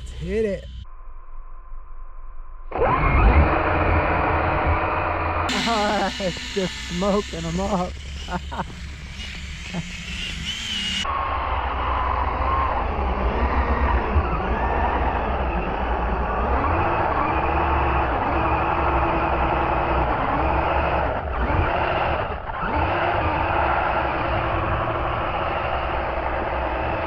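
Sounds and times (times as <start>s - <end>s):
tires churning through snow: 2.7s - 6.5s, 7.2s - 27.0s
electric motor whining: 2.7s - 11.3s.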